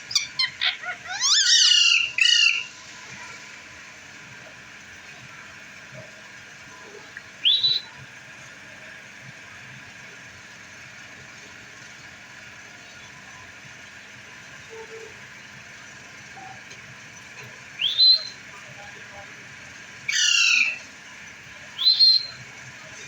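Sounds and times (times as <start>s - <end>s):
parakeet shrill call: 0.1s - 2.7s, 17.8s - 18.4s, 20.1s - 20.9s, 21.8s - 22.4s.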